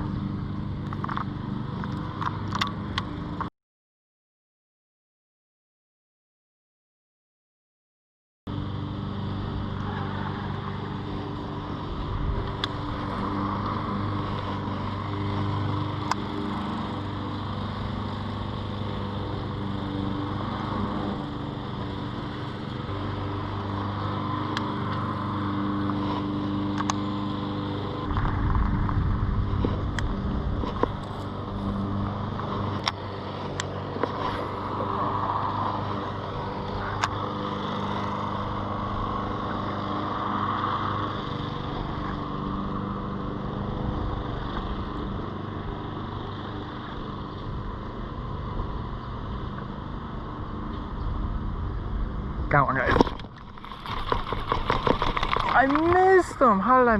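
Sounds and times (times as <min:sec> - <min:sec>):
outboard motor running: 0:00.0 - 0:03.5, 0:08.5 - 0:56.9
low rumble: 0:28.1 - 0:30.9.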